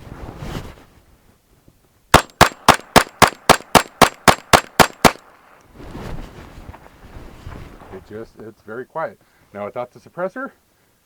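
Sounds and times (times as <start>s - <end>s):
suppressed pistol shots: 2.1s - 5.6s.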